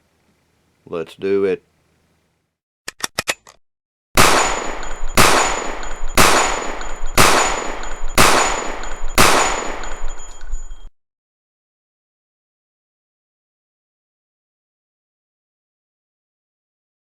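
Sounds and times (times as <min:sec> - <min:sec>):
gunshot-like bangs: 0:04.2 - 0:10.2
thin steady high tone: 0:08.8 - 0:10.9.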